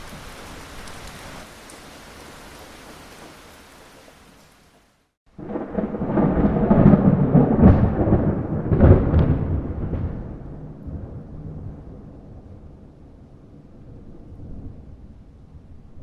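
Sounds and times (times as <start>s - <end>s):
rain hiss: 0.0s - 5.6s
rolling thunderclap: 5.3s - 15.7s.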